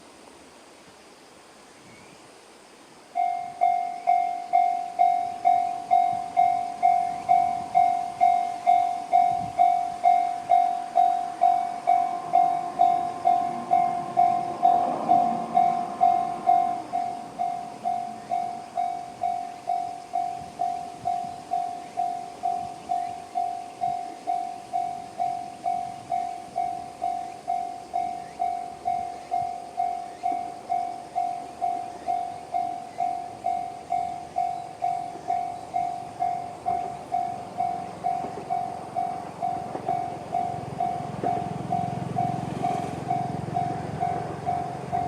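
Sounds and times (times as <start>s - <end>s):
level-crossing alarm dinging: 3.2s - 45.0s
engine-like hum: 34.7s - 45.0s.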